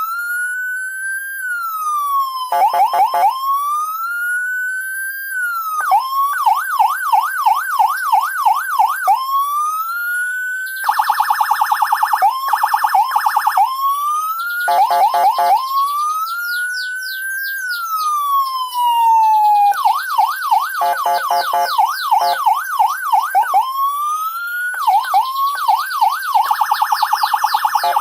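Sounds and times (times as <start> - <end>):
electronic siren wail and yelp: 0.0 - 28.0.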